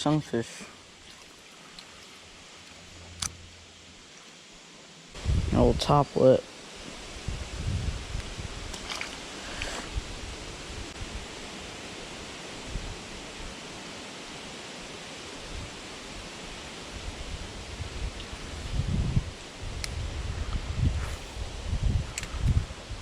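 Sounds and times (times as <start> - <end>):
low rumbles: 1.7 - 4.2, 20.8 - 22.8.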